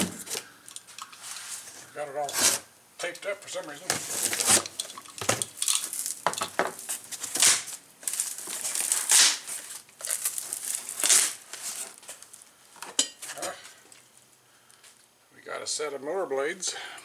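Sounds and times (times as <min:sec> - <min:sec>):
wrapping crinkling: 0:03.5 - 0:14.8
packing tape ripping: 0:03.8 - 0:12.4.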